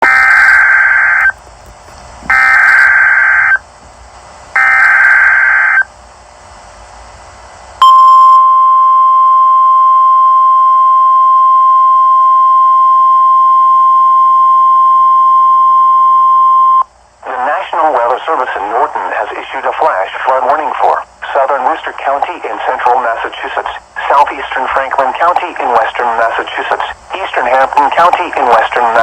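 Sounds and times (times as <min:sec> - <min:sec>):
steady alert attention tone: 0:02.3 - 0:03.6
warbling digital data tones: 0:02.3 - 0:03.6.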